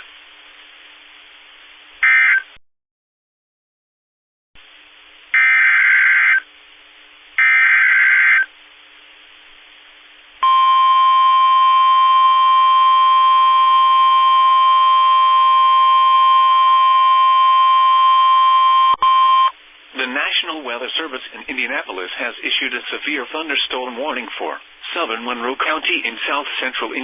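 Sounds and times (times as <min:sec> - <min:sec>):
steady warning alarm tone: 0:05.4 - 0:06.4, 0:10.4 - 0:19.5
radio hiss: 0:19.9 - 0:27.0.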